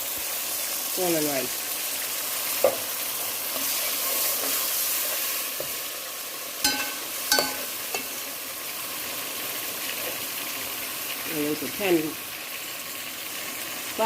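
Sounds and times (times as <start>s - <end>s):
vegetables sizzling in a pot: 0.0s - 14.0s
utensil clinking against pot: 6.6s - 8.2s.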